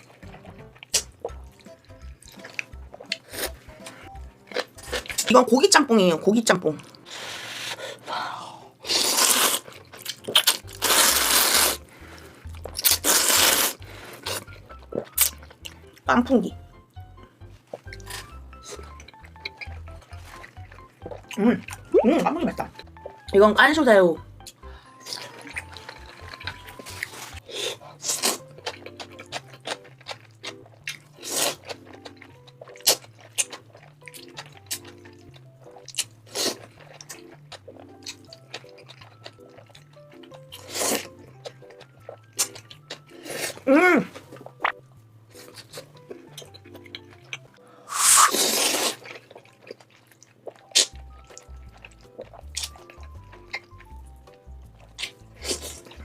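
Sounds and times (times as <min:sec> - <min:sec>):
wet chewing clicks: 0:00.0 - 0:05.4, 0:17.7 - 0:23.2, 0:24.4 - 0:43.6, 0:44.2 - 0:47.6, 0:48.2 - 0:56.0
soft background music: 0:00.0 - 0:56.0
noodles being slurped: 0:08.8 - 0:15.8, 0:31.0 - 0:46.3, 0:47.9 - 0:54.0, 0:54.8 - 0:56.0.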